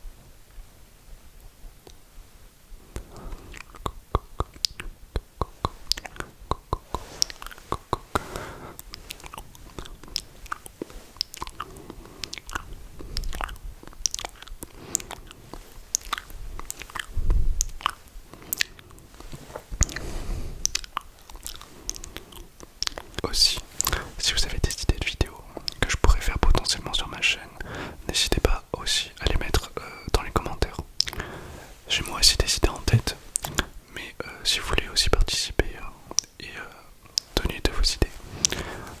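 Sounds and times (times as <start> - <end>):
tongue clicks: 3.0 - 20.0, 20.6 - 27.2, 30.2 - 31.2, 36.1 - 36.4, 37.0 - 37.8
wet lip smacks: 3.0 - 20.0, 20.6 - 26.7, 30.3 - 31.3, 32.4 - 33.8, 36.1 - 36.4, 37.0 - 37.5, 38.3 - 39.0
breathy exhaling: 6.9 - 9.2, 31.1 - 31.9, 38.1 - 39.0.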